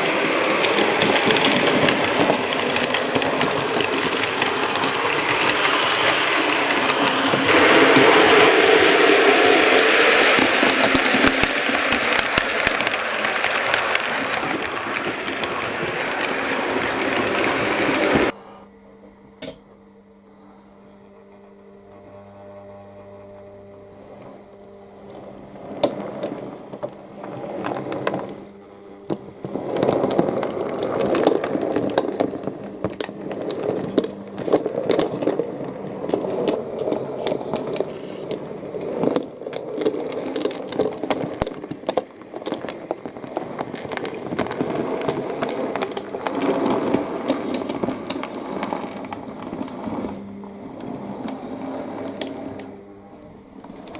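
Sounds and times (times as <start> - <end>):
model train wheels rattling: 0.0 - 18.3, 25.6 - 52.9
motor hum: 0.0 - 53.9.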